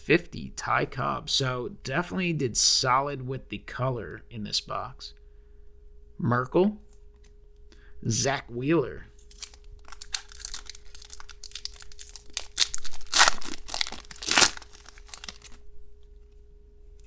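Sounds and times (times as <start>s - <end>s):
foil wrapper crinkling: 9.1s - 15.6s
foil wrapper ripping: 9.2s - 15.6s.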